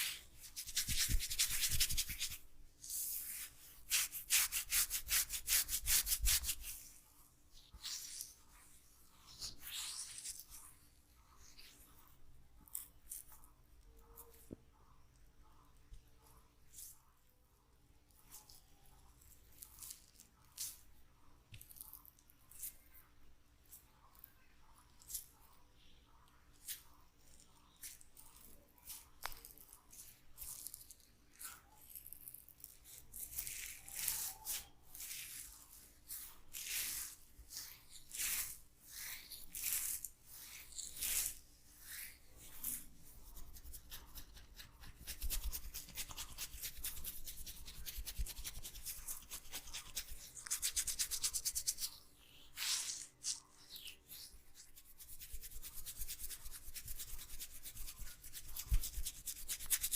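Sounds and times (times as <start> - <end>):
hands rubbing oiled hair: 0.0 - 6.9, 9.2 - 10.8, 33.1 - 59.9.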